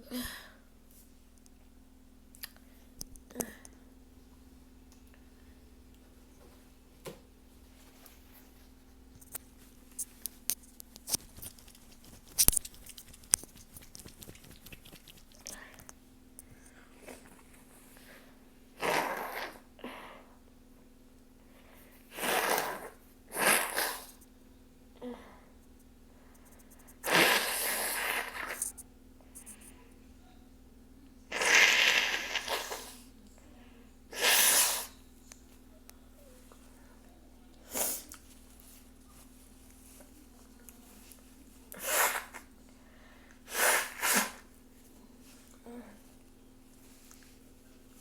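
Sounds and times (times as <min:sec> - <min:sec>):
paper tissues crinkling: 0:09.3 - 0:15.7
person sneezing loudly: 0:34.2 - 0:34.9.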